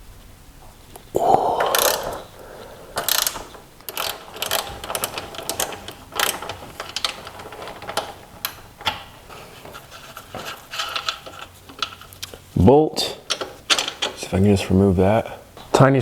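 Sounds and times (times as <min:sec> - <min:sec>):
metallic tool clicks and rattles: 0:03.0 - 0:09.1.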